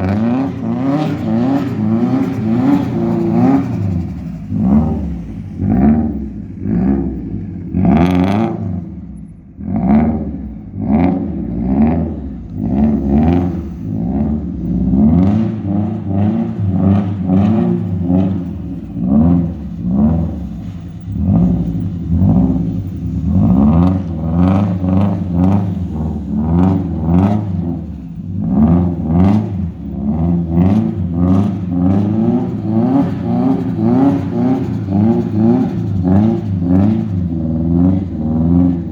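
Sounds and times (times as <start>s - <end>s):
car engine revving hard: 0.0s - 38.9s.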